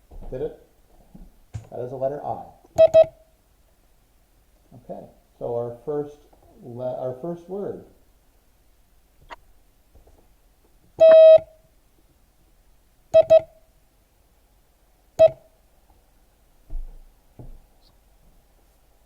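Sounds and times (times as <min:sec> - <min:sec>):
morse code tone: 0:02.8 - 0:03.2, 0:11.0 - 0:11.5, 0:13.2 - 0:13.5, 0:15.2 - 0:15.4.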